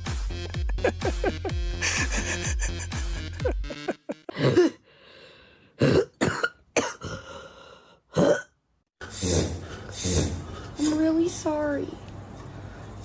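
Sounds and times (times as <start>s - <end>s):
person coughing: 4.3s - 4.8s, 5.8s - 7.4s, 8.1s - 8.6s.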